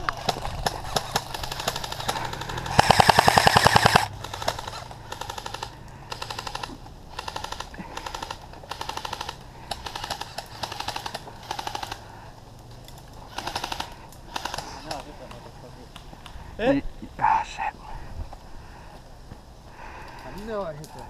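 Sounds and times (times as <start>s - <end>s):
airsoft guns firing bursts: 0.2s - 12.0s, 13.3s - 15.0s.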